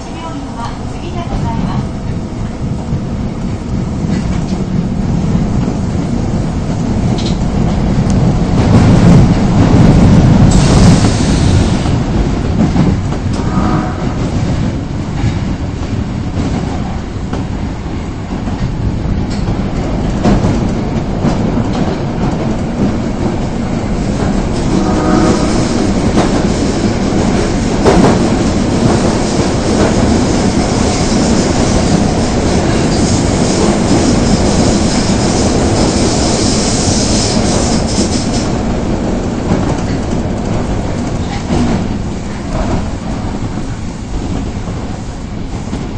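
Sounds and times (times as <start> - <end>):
train wheels rumbling on rails: 0.0 - 45.9.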